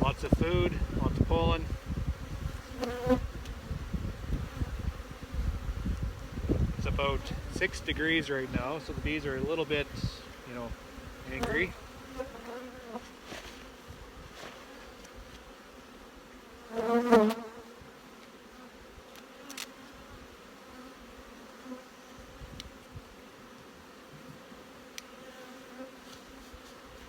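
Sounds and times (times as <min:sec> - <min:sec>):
bees buzzing: 0:00.0 - 0:27.0
bee flying past microphone: 0:00.4 - 0:08.1, 0:16.5 - 0:18.0.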